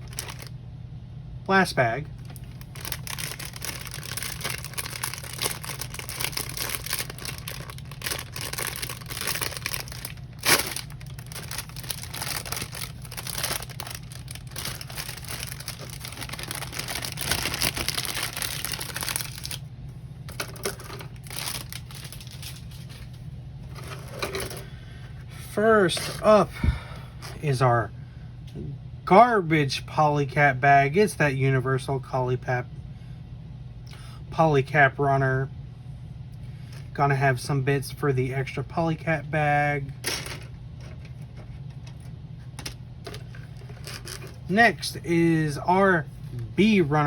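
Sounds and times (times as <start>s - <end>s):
plastic bags crinkling: 0.0s - 0.5s, 2.2s - 19.6s, 20.3s - 24.7s, 42.6s - 44.6s.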